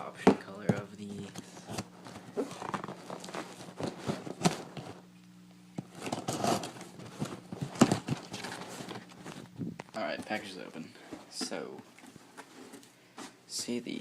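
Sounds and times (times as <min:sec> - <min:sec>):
cardboard box being opened: 0:05.9 - 0:09.5.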